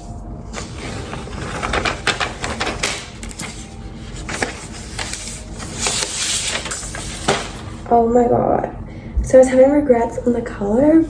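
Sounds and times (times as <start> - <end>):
packaging rustling and scratching: 0.0 - 7.8.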